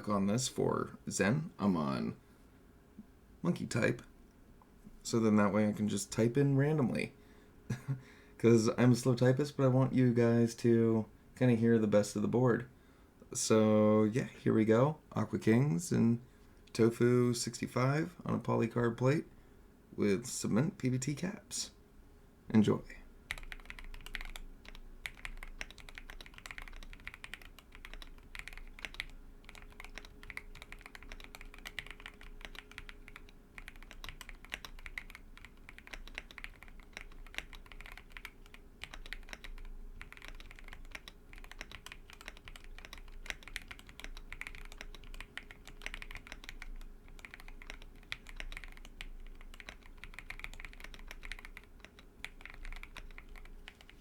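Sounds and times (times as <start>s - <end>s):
muted mechanical keyboard typing: 23.3s - 54.0s.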